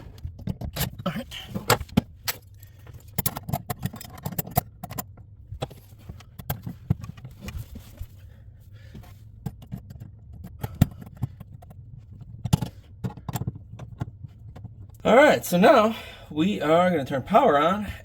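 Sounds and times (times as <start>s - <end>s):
clicks taps and scrapes on wiring: 0.0s - 8.1s, 9.0s - 15.0s.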